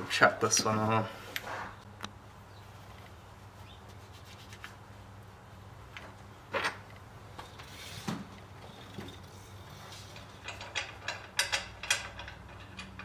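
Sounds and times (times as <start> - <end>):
bike parts scraping: 7.4 - 11.2.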